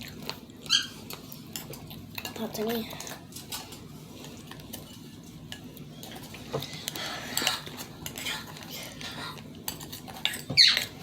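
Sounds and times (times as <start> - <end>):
spoons clinking against bowls: 9.7 - 11.0.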